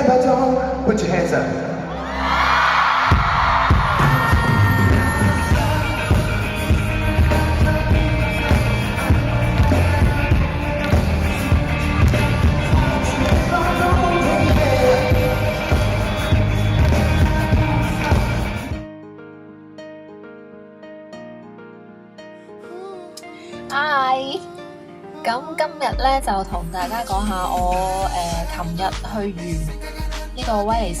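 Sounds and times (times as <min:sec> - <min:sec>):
pop concert music over loudspeakers: 0:00.0 - 0:18.9, 0:23.0 - 0:31.0
pounding bass beat: 0:03.1 - 0:18.6, 0:26.0 - 0:31.0
person singing: 0:04.0 - 0:18.8, 0:22.6 - 0:31.0.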